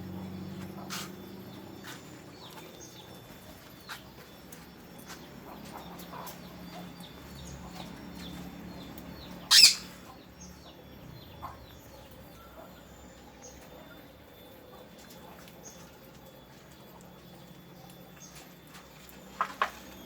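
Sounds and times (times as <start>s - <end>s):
birds chirping: 0.0s - 19.8s
parrot harsh squawk: 9.5s - 10.0s.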